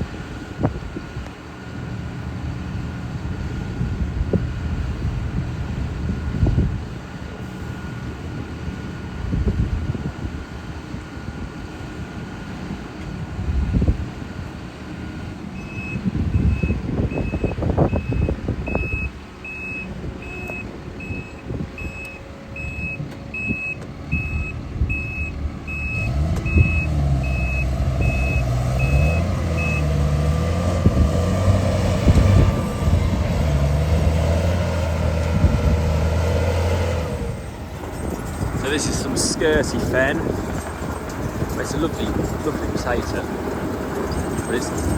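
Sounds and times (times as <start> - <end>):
diesel engine drone: 0.0 - 44.9
reversing alarm beeping: 15.6 - 30.3.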